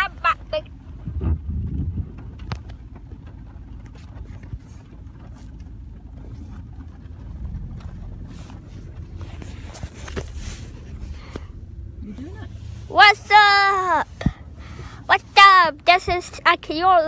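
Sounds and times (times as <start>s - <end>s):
low rumble of vehicle noise: 0.0s - 17.0s
rustles: 2.1s - 13.0s.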